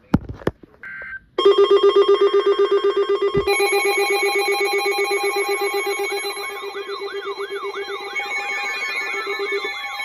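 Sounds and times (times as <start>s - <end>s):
rapidly pulsing alarm tone: 1.4s - 10.0s
higher alert tone: 3.2s - 10.0s.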